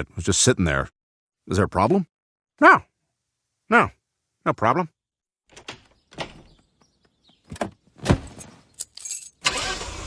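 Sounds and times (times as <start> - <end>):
knocks and thuds: 5.5 - 8.4.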